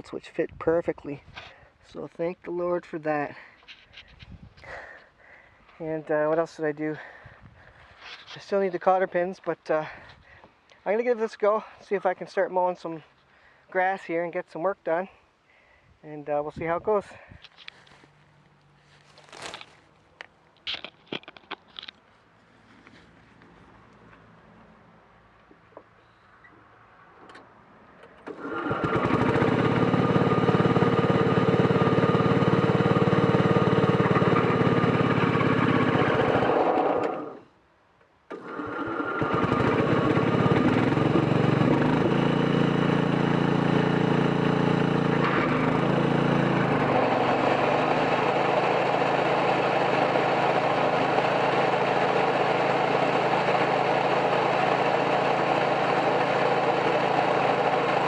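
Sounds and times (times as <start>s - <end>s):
lawn tractor engine running: 28.2s - 37.4s, 38.3s - 58.0s.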